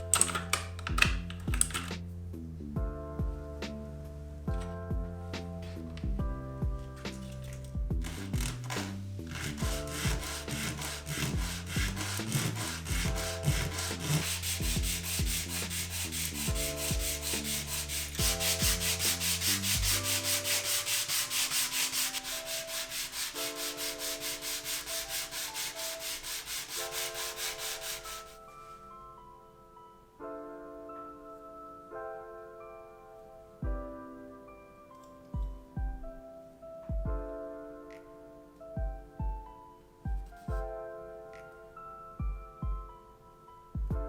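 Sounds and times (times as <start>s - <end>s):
soft melodic background music: 0.0s - 44.0s
rapid hand sanding strokes: 8.0s - 28.4s.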